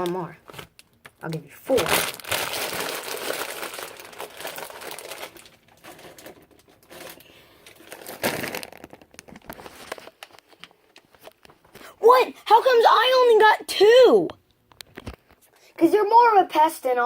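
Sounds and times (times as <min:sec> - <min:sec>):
chip bag crinkling: 0:00.0 - 0:11.4.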